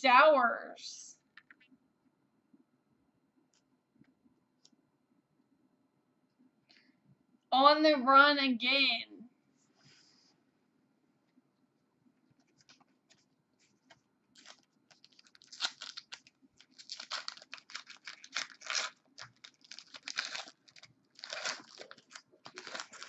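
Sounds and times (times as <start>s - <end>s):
foil wrapper crinkling and tearing: 14.3s - 23.0s.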